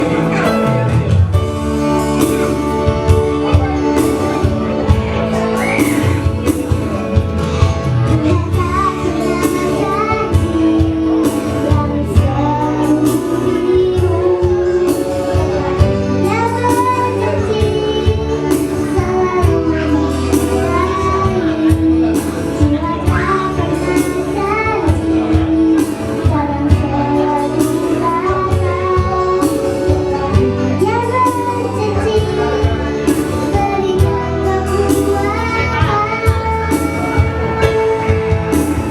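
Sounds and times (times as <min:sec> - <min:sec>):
instrumental accompaniment with beat: 0:00.0 - 0:38.9
woman singing: 0:08.1 - 0:38.9.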